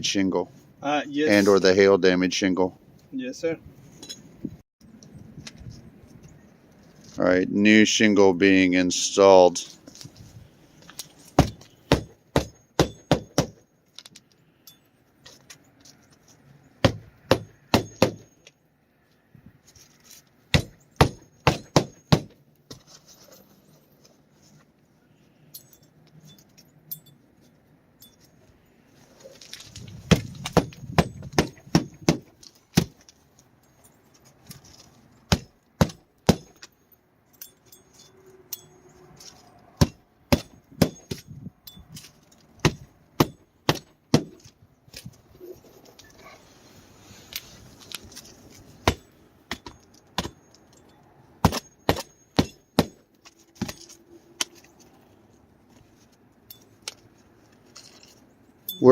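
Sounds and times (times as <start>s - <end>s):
hammer driving nails into shingle: 11.4s - 13.6s, 16.8s - 18.3s, 20.5s - 22.4s, 30.1s - 33.0s, 35.3s - 36.7s, 39.8s - 41.2s, 42.6s - 44.5s, 51.4s - 53.0s.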